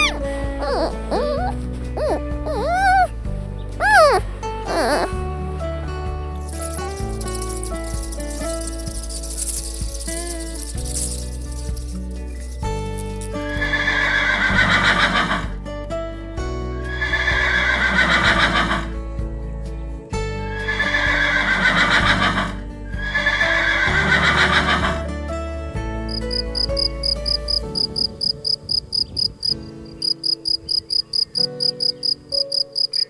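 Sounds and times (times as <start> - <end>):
horse whinnying: 0.0 - 3.2, 3.8 - 5.2
background music with low notes: 0.0 - 33.0.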